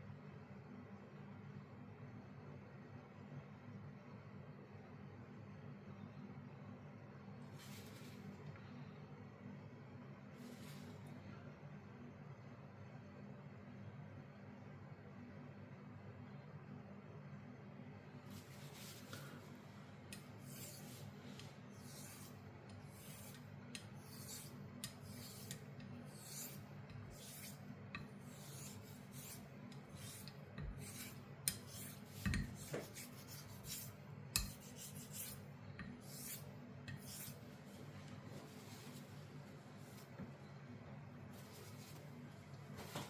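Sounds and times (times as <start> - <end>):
razor rasping on sharpening stone: 20.1 - 21.1, 21.7 - 37.4.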